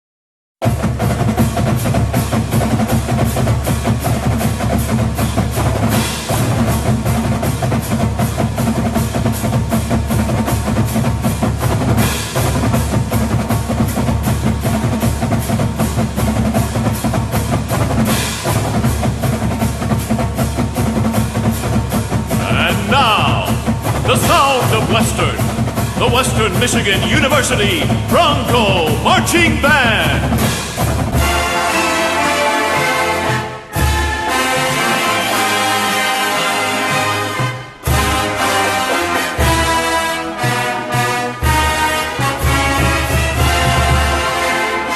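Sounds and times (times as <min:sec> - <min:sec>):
fast drum beat: 0:00.6 - 0:31.4.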